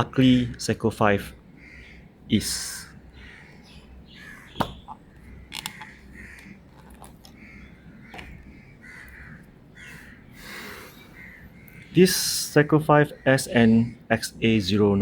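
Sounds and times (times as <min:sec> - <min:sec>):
crows cawing: 0:01.5 - 0:12.0.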